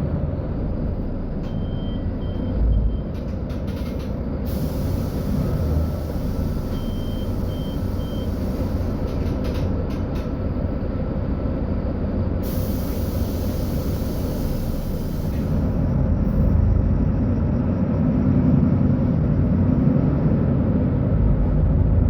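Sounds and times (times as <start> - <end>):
bus engine rumbling: 0.0 - 22.0.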